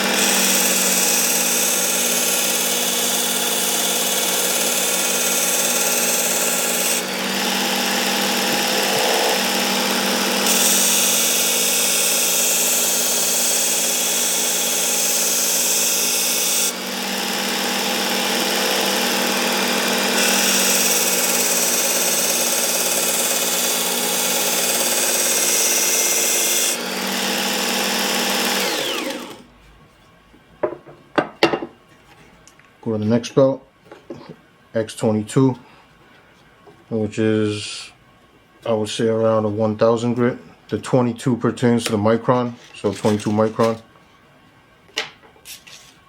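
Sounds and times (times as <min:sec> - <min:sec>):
metal grinding on belt: 0:00.0 - 0:29.3
sharpener motor whine: 0:00.0 - 0:29.4.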